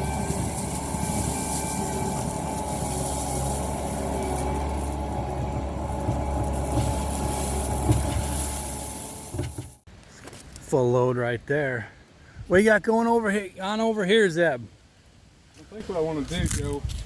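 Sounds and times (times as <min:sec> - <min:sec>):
loader diesel engine drone: 0:00.0 - 0:09.8
thin steady whine: 0:00.0 - 0:09.8.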